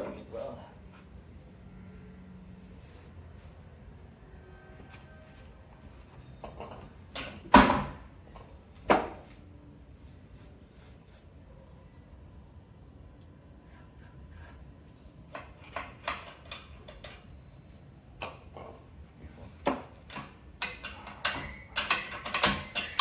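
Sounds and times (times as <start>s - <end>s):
metal tools clicking and knocking: 20.0s - 23.0s.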